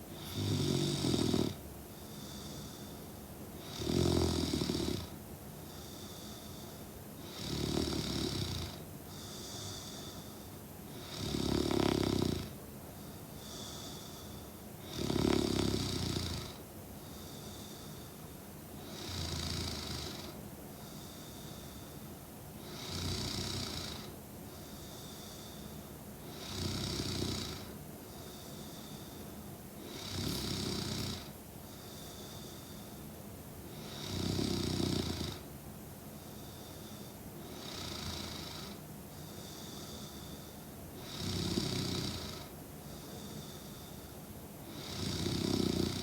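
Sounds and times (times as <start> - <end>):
woman snoring: 0.2 - 1.6, 3.6 - 5.1, 7.2 - 10.2, 10.9 - 12.6, 14.8 - 16.6, 18.8 - 20.4, 22.6 - 24.2, 26.2 - 29.2, 29.8 - 32.8, 33.7 - 35.5, 36.4 - 38.8, 39.4 - 42.6, 43.2 - 46.0.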